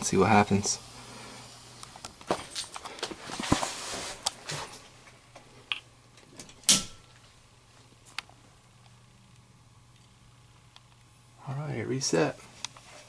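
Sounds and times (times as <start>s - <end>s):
circuit breaker clacking: 6.4s - 7.1s.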